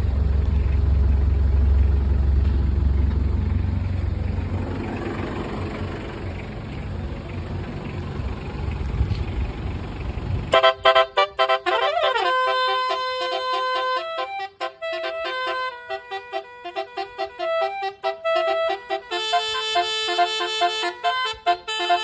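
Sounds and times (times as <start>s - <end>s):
vehicle engine idling: 0.0s - 22.0s
multi-note air horn: 10.6s - 22.0s.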